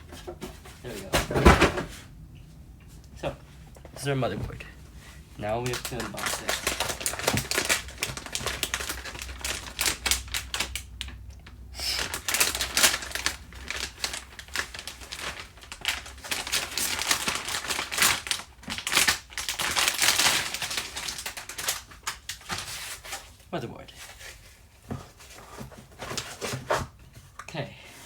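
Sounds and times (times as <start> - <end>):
plastic packaging crinkling: 5.4 - 23.4.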